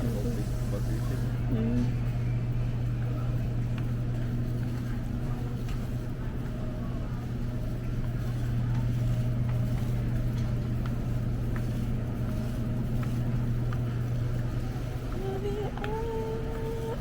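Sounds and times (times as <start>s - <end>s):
low machine hum: 0.0s - 17.0s.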